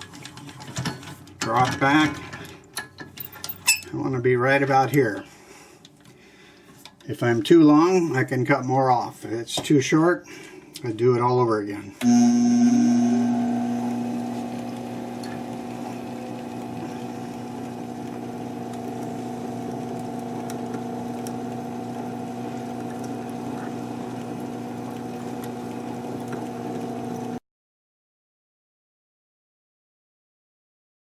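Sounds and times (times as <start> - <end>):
metal lathe motor hum: 12.0 - 27.4.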